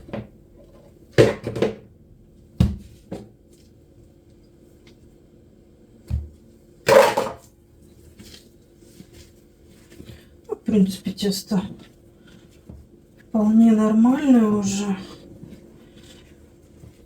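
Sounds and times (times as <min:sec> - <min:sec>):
kitchen things knocking and clattering: 0:00.0 - 0:01.9, 0:06.9 - 0:07.5.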